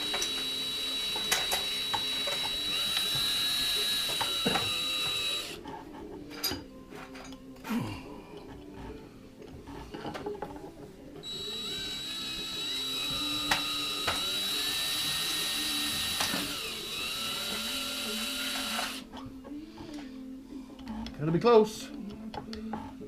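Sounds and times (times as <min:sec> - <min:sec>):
electric drill whining: 0:00.0 - 0:05.6, 0:11.2 - 0:19.1.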